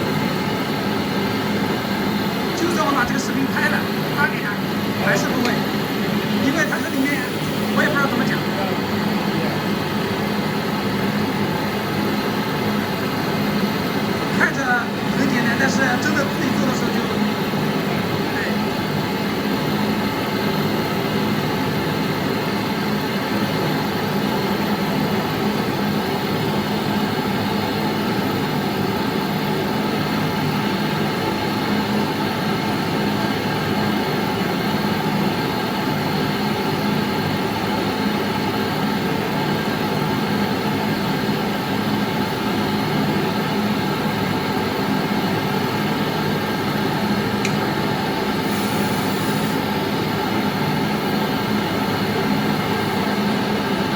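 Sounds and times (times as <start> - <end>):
gas torch burning: 0.1 - 21.3, 40.4 - 53.9.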